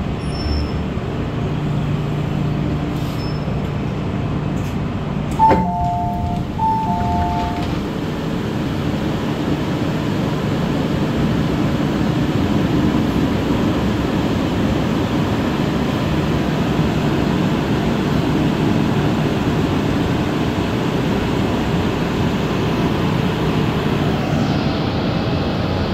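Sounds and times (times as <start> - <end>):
metro train rumble: 0.0 - 25.9
two-note beeps: 5.4 - 7.8.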